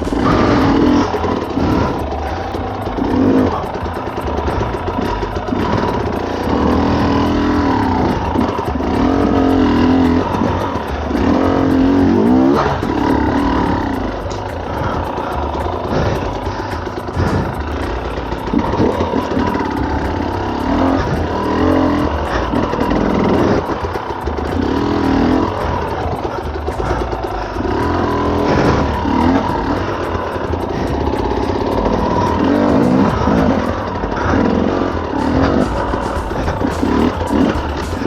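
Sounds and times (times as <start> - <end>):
dirt bike engine revving: 0.0 - 38.0.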